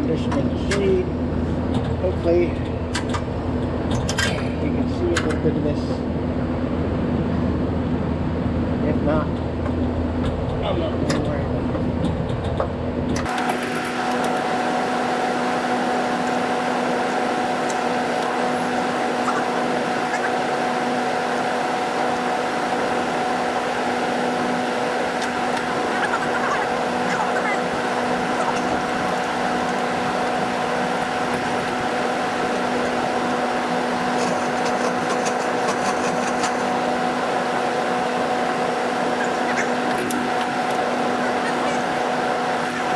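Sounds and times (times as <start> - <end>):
air conditioner unit humming: 0.0 - 42.9.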